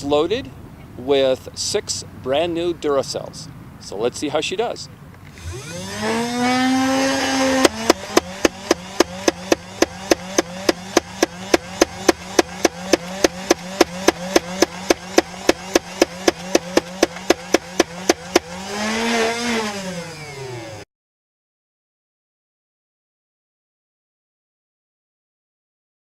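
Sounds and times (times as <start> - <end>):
flywheel motor whine: 5.3 - 20.8
toy blaster shots cracking: 6.2 - 18.7.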